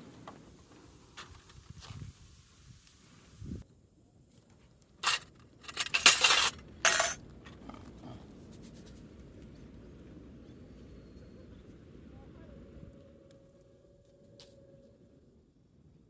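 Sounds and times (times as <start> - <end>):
metal camp gear clattering: 5.0 - 7.9.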